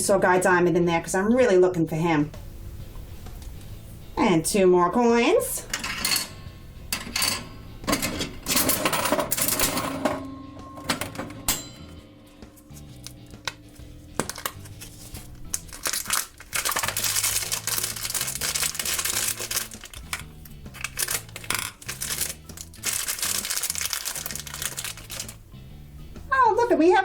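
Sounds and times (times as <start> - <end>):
quiet background music: 0.0 - 27.0
foil bag crinkling and tearing: 14.2 - 25.4.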